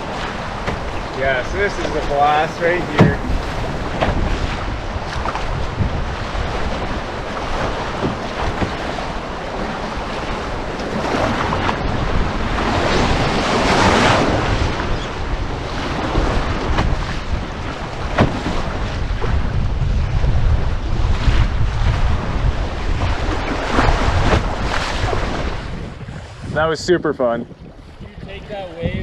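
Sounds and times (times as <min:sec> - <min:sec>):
wind buffeting microphone: 0:00.0 - 0:29.0
whitewater rapids rushing: 0:01.1 - 0:04.0, 0:10.6 - 0:14.3
sharp knock: 0:02.8 - 0:03.6.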